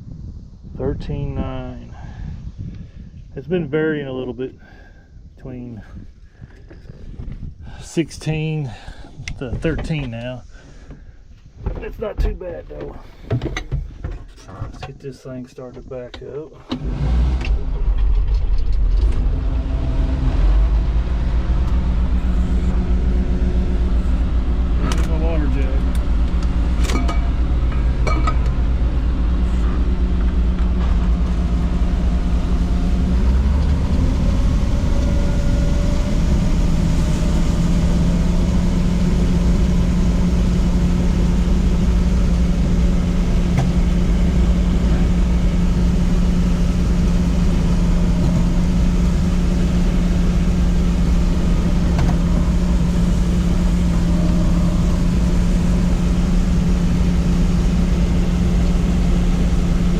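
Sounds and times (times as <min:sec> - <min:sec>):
combine harvester engine running: 0:16.5 - 0:59.9.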